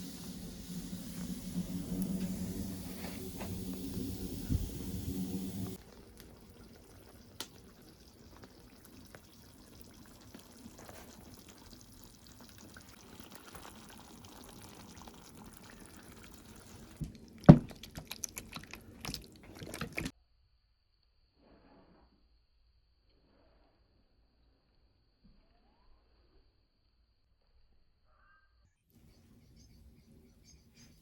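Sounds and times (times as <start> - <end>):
liquid pouring: 0.0 - 20.1.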